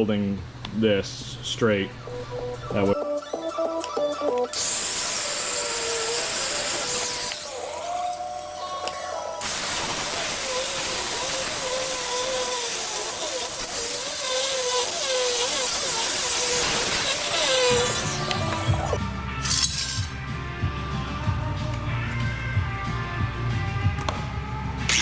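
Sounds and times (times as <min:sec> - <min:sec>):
cutting torch hissing: 0:04.2 - 0:19.0.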